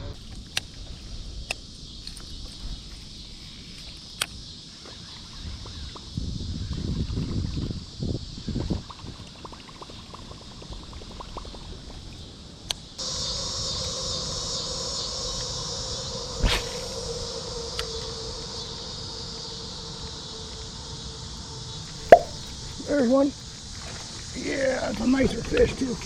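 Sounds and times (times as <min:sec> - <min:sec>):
insects buzzing: 0:00.0 - 0:26.0
sharp knock: 0:22.1 - 0:22.4.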